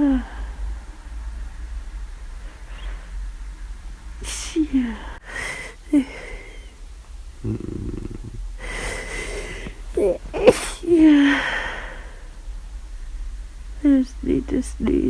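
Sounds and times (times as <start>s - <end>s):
voiced breath out: 7.4s - 10.2s, 11.3s - 12.2s
catching breaths in: 8.6s - 9.9s
person sneezing: 8.9s - 11.9s.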